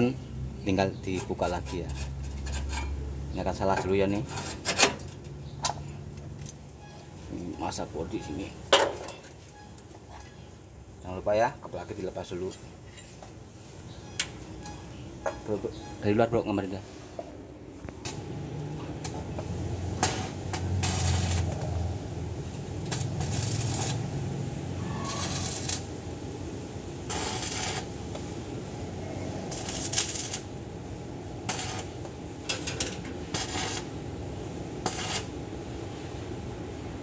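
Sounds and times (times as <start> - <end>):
arc welding crackling: 17.8 - 36.2.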